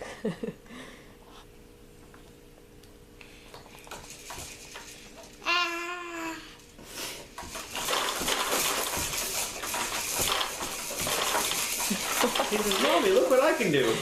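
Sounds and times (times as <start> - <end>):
rattling clattering noise: 3.5 - 5.6, 6.6 - 14.0.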